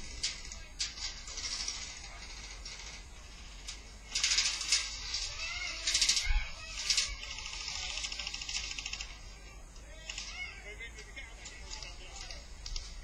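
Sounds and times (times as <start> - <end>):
scattered clicks: 0.0 - 13.0
steady hiss: 0.0 - 13.0
airsoft guns firing bursts: 7.1 - 9.3.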